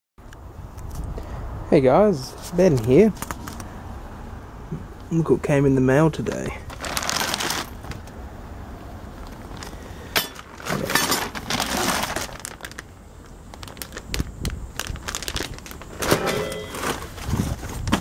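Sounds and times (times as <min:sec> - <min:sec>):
packaging crinkling: 0:06.4 - 0:08.2, 0:09.2 - 0:18.0.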